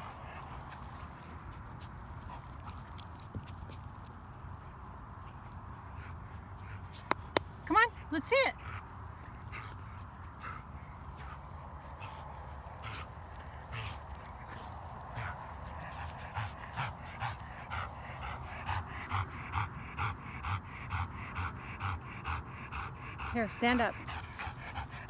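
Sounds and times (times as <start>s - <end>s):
dog breathing in puffs: 8.6s - 25.0s.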